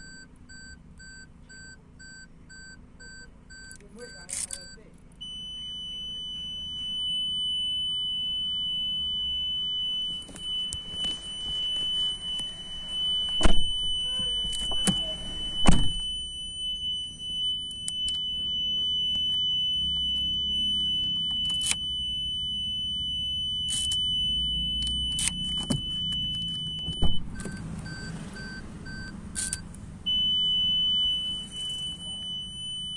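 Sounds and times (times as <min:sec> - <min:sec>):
high-pitched parking buzzer tone: 0:00.0 - 0:32.9
pulsing beep: 0:00.0 - 0:32.9.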